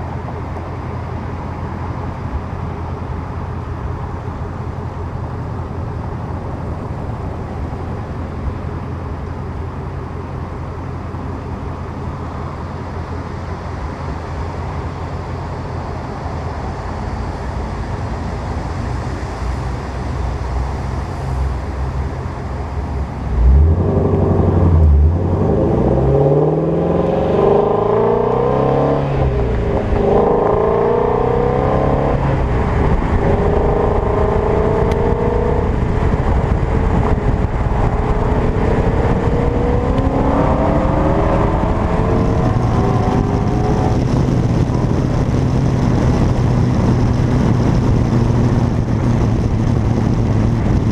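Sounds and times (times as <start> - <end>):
wind noise: 0.0 - 50.9
car engine exhaust revving: 23.2 - 50.9.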